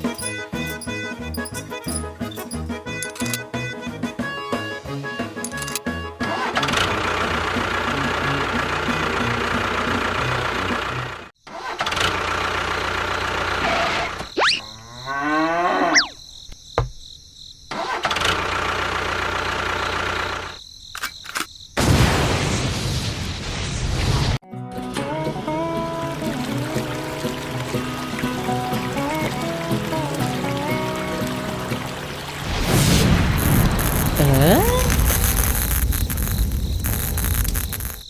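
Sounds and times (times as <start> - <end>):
vehicle engine running: 5.5 - 11.3, 12.1 - 13.7, 18.2 - 20.6.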